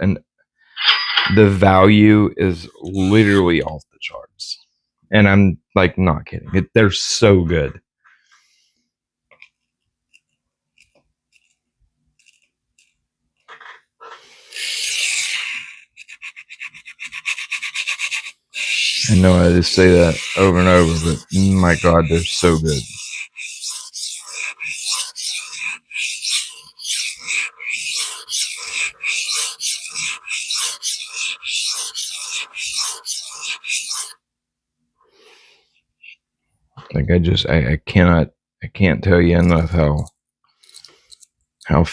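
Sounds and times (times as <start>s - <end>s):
knife scraping on sharpening stone: 0.8s - 1.7s, 14.8s - 34.2s.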